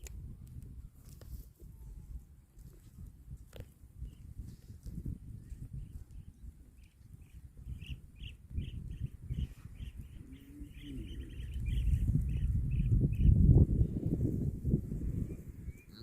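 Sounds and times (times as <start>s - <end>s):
small bird chirping: 5.7s - 13.4s.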